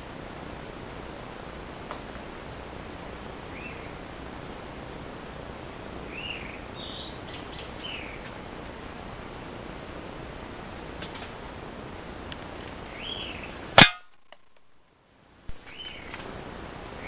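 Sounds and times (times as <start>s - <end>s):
steady background hiss: 0.0s - 17.0s
small bird chirping: 2.1s - 4.2s, 6.0s - 8.4s, 12.9s - 13.6s, 15.6s - 16.2s.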